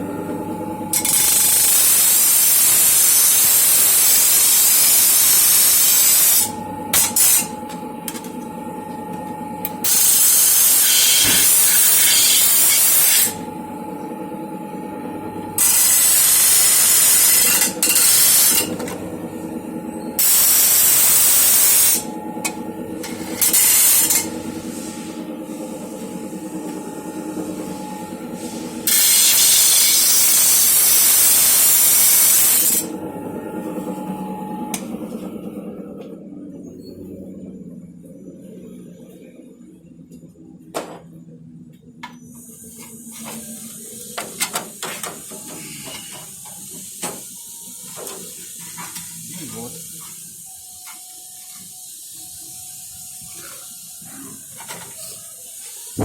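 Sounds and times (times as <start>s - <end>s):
steady hum: 0.0s - 54.8s
compressed air hissing: 28.3s - 32.7s, 48.2s - 56.0s.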